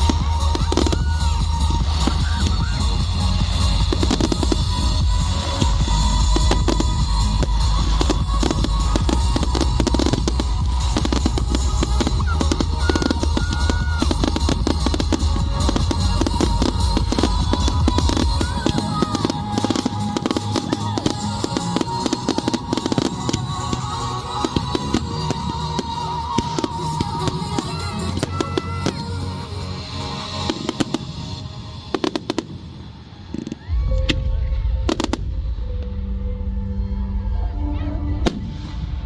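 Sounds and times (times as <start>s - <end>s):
loud music with drums: 0.0s - 29.1s
fireworks crackling and banging: 0.0s - 35.5s
deep rumble: 33.6s - 39.0s.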